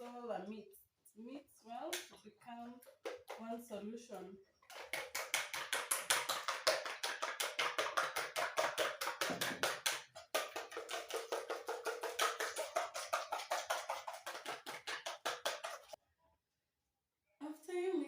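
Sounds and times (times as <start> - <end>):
utensil beating eggs in a bowl: 4.6 - 16.0.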